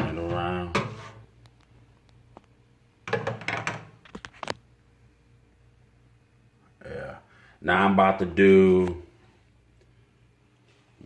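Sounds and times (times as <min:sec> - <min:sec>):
faint low hum: 0:00.0 - 0:11.0.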